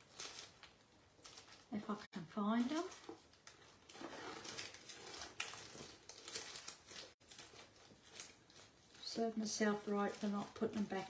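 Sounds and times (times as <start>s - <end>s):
rummaging through craft supplies: 0.0s - 11.0s.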